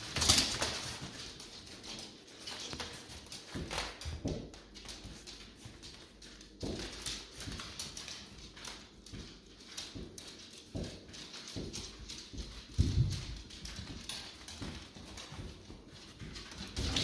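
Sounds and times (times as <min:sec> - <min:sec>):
footsteps on hard surface: 0:00.0 - 0:17.0.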